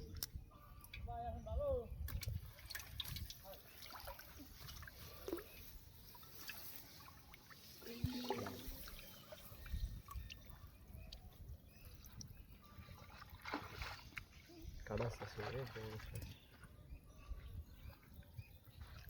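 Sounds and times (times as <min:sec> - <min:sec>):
water dripping and trickling: 0:02.0 - 0:16.7.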